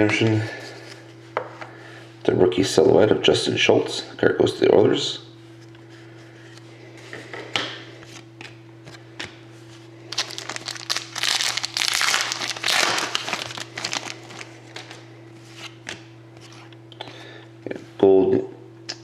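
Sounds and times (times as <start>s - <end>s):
steady low hum: 0.0s - 19.0s
wrapping crinkling: 10.1s - 15.0s.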